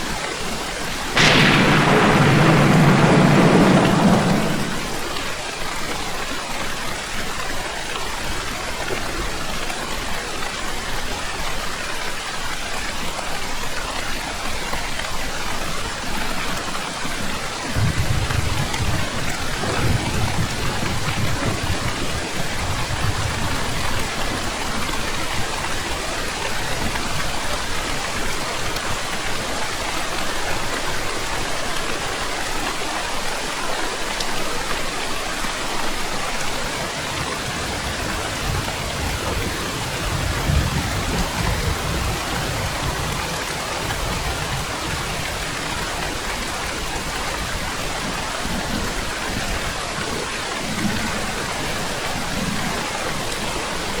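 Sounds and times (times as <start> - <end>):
heavy rain hissing: 0.0 - 10.4, 15.4 - 54.0
distant thunder rumbles: 0.9 - 5.6, 17.8 - 26.4, 36.4 - 48.8.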